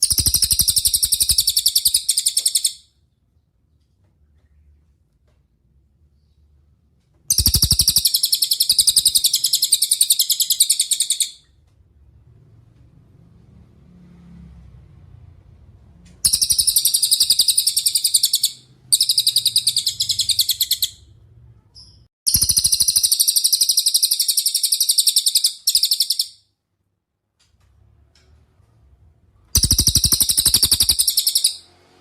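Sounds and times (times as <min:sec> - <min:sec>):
bird shrill trilled song: 0:00.0 - 0:02.9, 0:07.3 - 0:11.4, 0:16.3 - 0:21.0, 0:21.8 - 0:26.4, 0:29.6 - 0:31.6.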